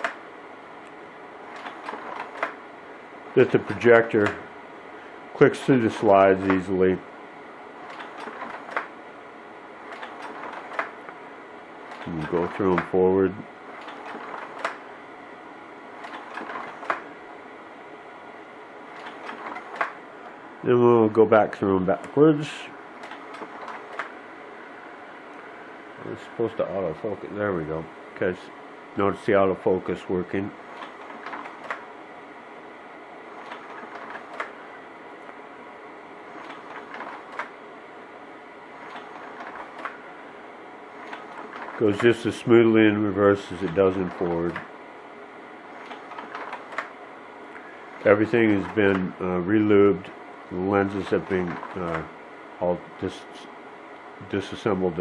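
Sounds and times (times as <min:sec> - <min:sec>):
slide projector clicks and clatter: 0:00.0 - 0:00.2, 0:00.8 - 0:02.6, 0:07.8 - 0:09.0, 0:09.8 - 0:11.2, 0:11.8 - 0:13.0, 0:13.8 - 0:14.9, 0:16.0 - 0:17.1, 0:18.9 - 0:20.0, 0:23.0 - 0:24.2, 0:30.7 - 0:32.0, 0:33.3 - 0:34.6, 0:36.3 - 0:37.6, 0:38.8 - 0:40.0, 0:41.0 - 0:42.2, 0:45.7 - 0:49.1, 0:50.9 - 0:52.1
slide projector whirring: 0:00.0 - 0:55.0
slide-change mechanism clicking: 0:00.8 - 0:02.6.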